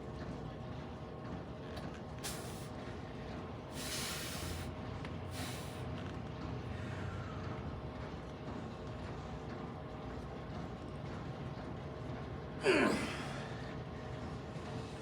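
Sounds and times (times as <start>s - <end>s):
low room hum: 0.0s - 15.0s
forceful hissing exhales: 2.2s - 2.7s, 3.7s - 4.7s, 5.3s - 5.8s.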